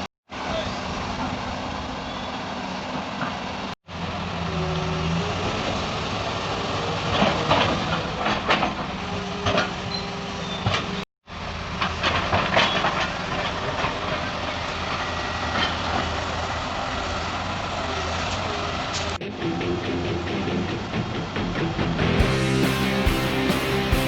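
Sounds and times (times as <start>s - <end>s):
excavator diesel engine running: 13.6s - 24.0s.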